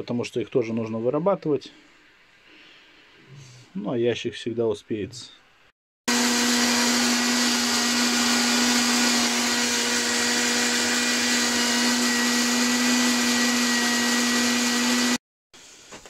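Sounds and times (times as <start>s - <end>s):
grain crusher grinding: 6.1s - 15.2s.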